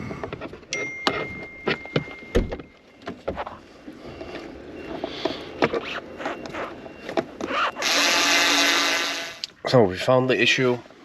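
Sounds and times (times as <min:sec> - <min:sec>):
hands handling car parts and tools: 0:00.0 - 0:07.8.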